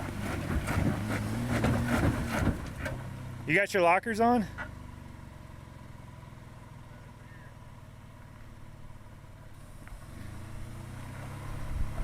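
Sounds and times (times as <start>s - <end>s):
truck engine idling and revving: 0.0s - 12.0s.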